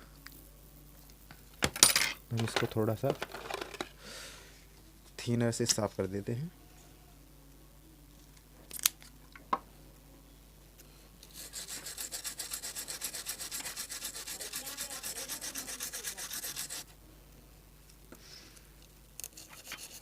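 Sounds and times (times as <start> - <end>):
fast even scrubbing: 11.4 - 16.8.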